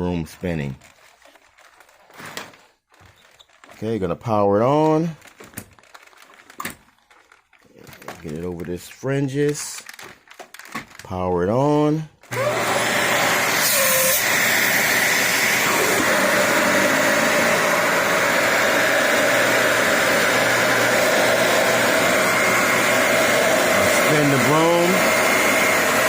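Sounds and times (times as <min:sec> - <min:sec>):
vacuum cleaner motor whining: 0:12.3 - 0:26.0.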